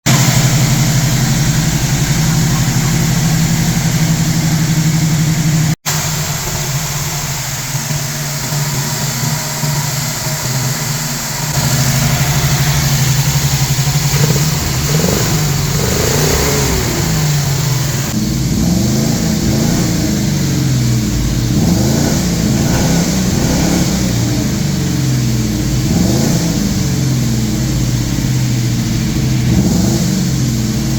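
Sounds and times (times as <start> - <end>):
engine revving and hunting: 11.5 - 30.9.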